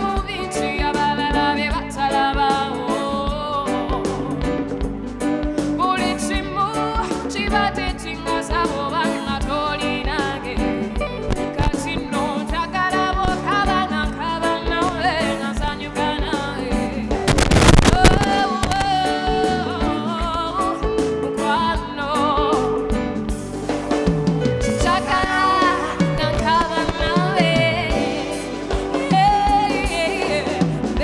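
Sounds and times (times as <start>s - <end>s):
lead singer singing: 0.0s - 23.2s, 24.6s - 31.0s
live band music: 0.0s - 31.0s
loud noisy crash: 17.3s - 18.9s.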